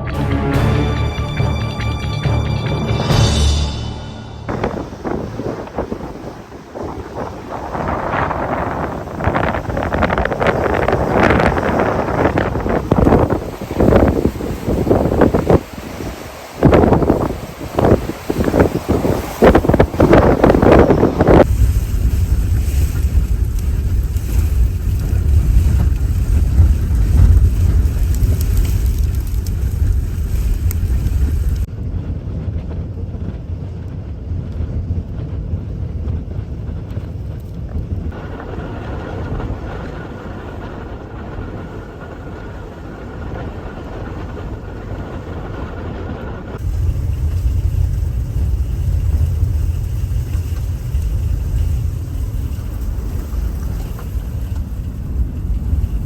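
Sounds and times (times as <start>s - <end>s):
strong wind buffeting microphone: 3.8s - 56.0s.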